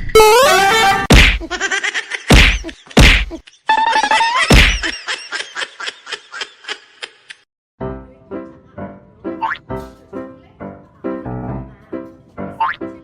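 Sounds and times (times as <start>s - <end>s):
heavy whacks: 1.1s - 1.5s, 2.3s - 3.4s, 4.5s - 4.9s.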